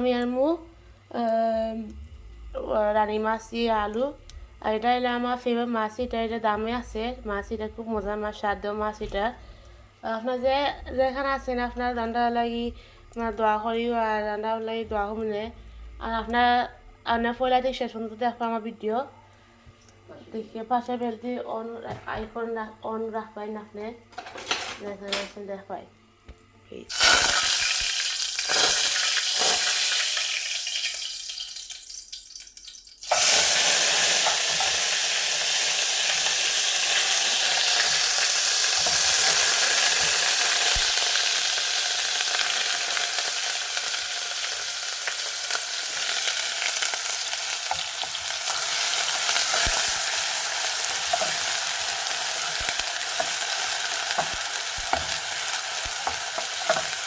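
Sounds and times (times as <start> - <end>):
onion and garlic sizzling in oil: 26.9 - 57.0.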